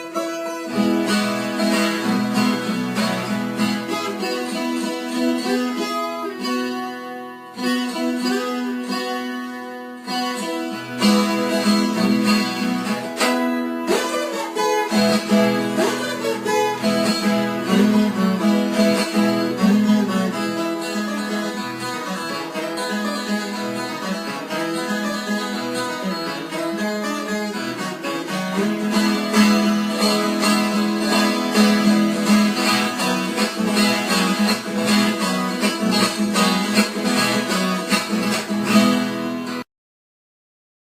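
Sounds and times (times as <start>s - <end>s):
plucked acoustic guitar: 0.0s - 39.6s
strings: 0.0s - 39.6s.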